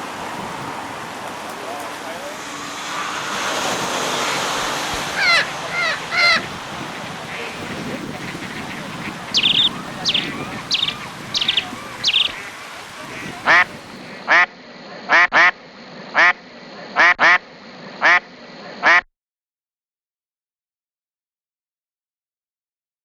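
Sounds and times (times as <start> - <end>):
birds calling: 4.1 - 14.4.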